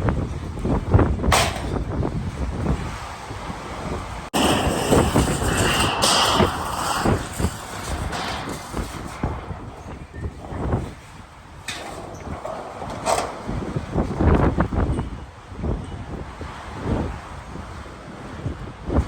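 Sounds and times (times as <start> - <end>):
gusty wind buffeting microphone: 0.0 - 19.0
knocks and rattles: 4.4 - 15.0.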